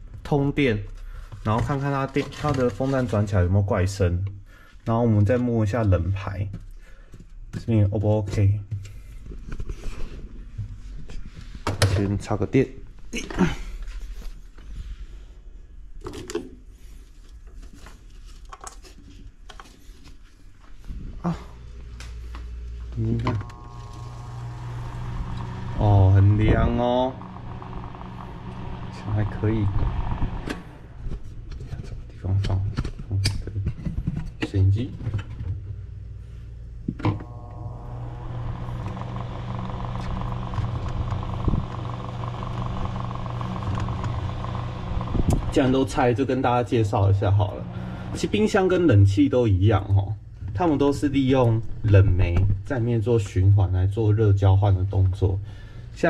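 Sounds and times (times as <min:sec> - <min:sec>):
faint low hum: 0:19.1 - 0:53.6
refrigerator fan whirring: 0:20.8 - 0:32.6, 0:35.4 - 0:53.3.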